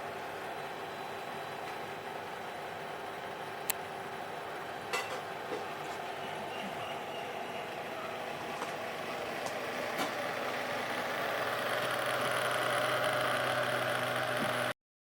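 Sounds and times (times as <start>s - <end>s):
small motor fan whirring: 5.4s - 14.8s.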